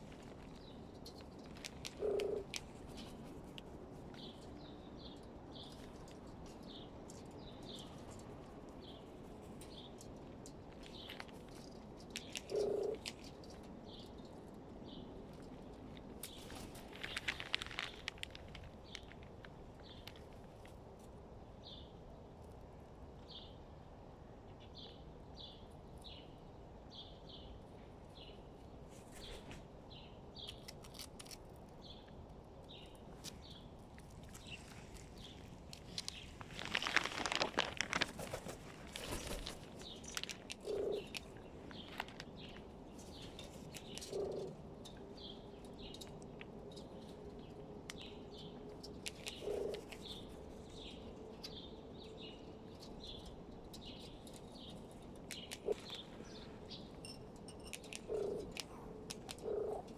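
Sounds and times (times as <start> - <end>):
crow chirping: 1.9 - 2.5, 12.4 - 13.0, 40.6 - 41.2, 43.8 - 44.6, 49.3 - 49.9, 55.4 - 56.6, 58.0 - 58.6, 59.3 - 59.9.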